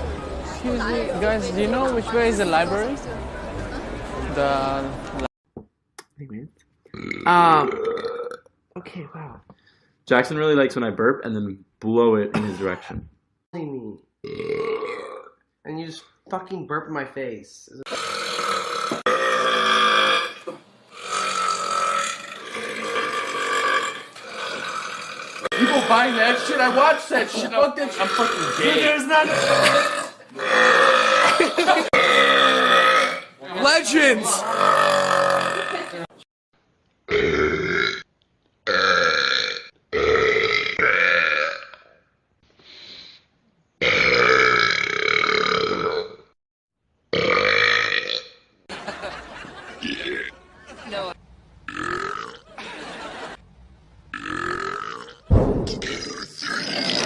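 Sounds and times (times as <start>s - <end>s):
man belching: 6.9s - 8.5s, 14.2s - 15.4s, 17.9s - 33.4s, 34.2s - 36.1s, 37.1s - 38.0s, 38.7s - 41.9s, 43.8s - 46.3s, 47.1s - 48.4s, 49.8s - 50.3s, 51.7s - 52.4s, 54.1s - 55.2s, 55.8s - 57.0s
men burping loudly: 6.9s - 8.5s, 14.2s - 15.4s, 17.9s - 33.4s, 34.2s - 36.2s, 37.1s - 38.1s, 38.7s - 41.8s, 43.8s - 46.3s, 47.1s - 48.4s, 49.8s - 50.4s, 51.7s - 52.5s, 54.1s - 55.2s, 55.8s - 57.0s.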